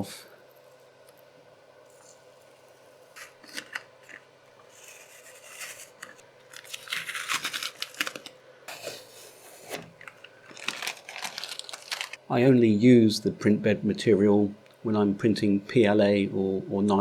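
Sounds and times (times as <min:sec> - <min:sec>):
tape tearing and ripping: 0:04.8 - 0:09.0, 0:10.5 - 0:12.2.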